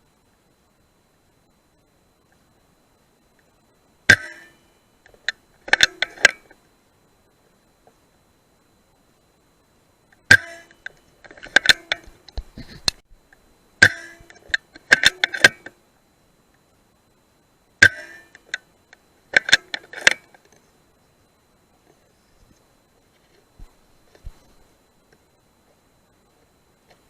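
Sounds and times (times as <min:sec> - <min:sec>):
rifle bolt metallic clicks: 0:05.7 - 0:06.4, 0:13.8 - 0:15.7, 0:19.3 - 0:20.3.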